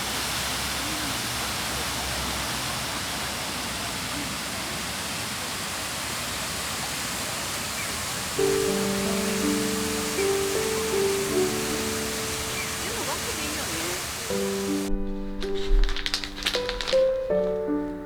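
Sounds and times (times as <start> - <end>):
steady hiss: 0.0 - 18.0
soft music: 8.4 - 18.0.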